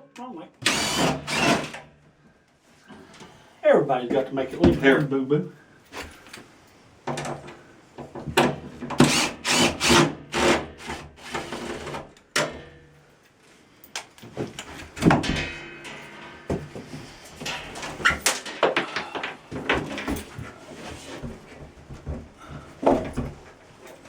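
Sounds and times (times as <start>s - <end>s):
hardware knocking and scraping: 14.3s - 24.0s.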